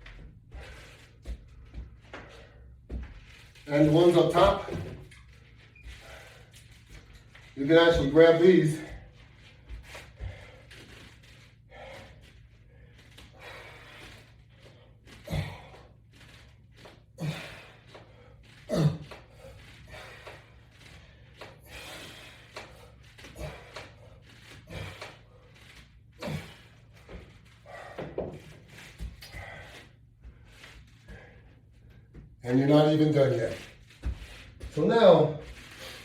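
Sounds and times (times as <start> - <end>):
man breathing hard: 0.2 - 3.5, 4.6 - 7.5, 8.8 - 32.4, 35.5 - 36.0.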